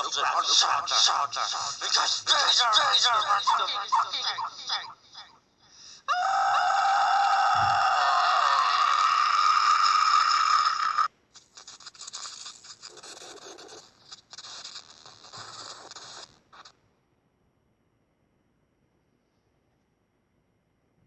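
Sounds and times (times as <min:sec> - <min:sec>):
scratchy static: 0:00.0 - 0:05.0, 0:09.7 - 0:16.8.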